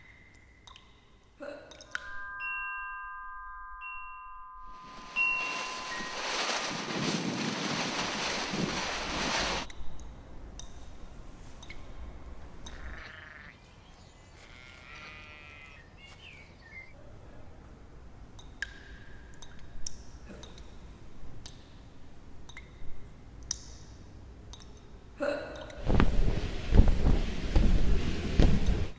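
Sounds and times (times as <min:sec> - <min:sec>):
sheep bleating: 0:12.7 - 0:13.6, 0:14.4 - 0:15.8.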